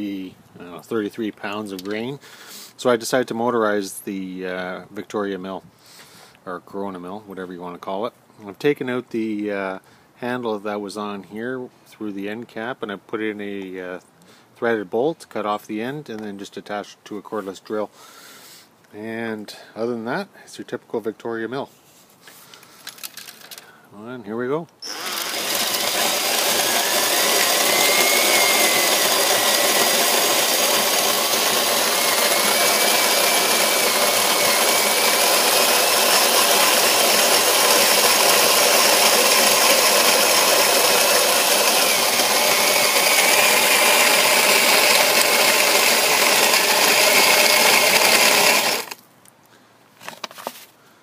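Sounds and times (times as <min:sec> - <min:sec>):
cordless drill whining: 0:24.8 - 0:49.0
grain mill grinding rattle: 0:24.8 - 0:49.0.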